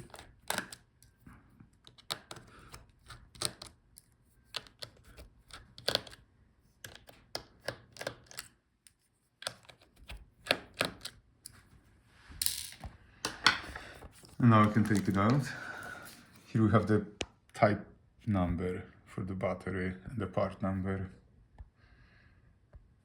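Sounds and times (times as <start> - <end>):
screwdriver clicking and tapping: 1.8 - 2.5, 3.2 - 6.2.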